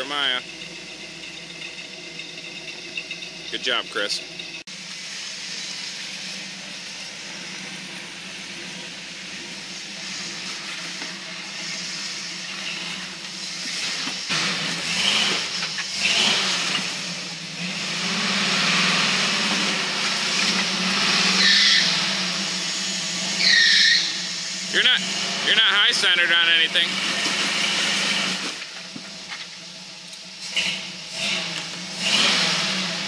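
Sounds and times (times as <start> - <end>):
truck engine running at low speed: 0.0 - 33.0
short high squeals: 21.2 - 25.0.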